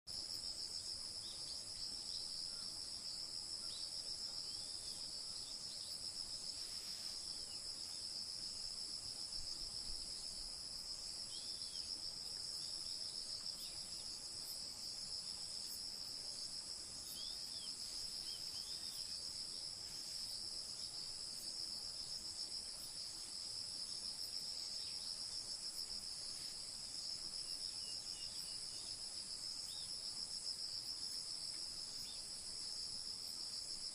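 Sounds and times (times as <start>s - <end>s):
insects trilling: 0.2s - 33.9s
faint bird chirps: 17.0s - 19.4s.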